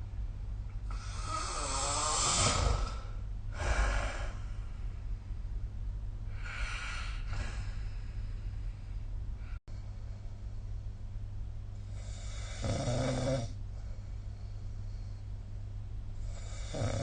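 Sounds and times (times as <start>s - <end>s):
steady low hum: 0.0s - 17.0s
person snoring: 0.9s - 4.4s, 12.0s - 13.6s, 16.2s - 17.0s.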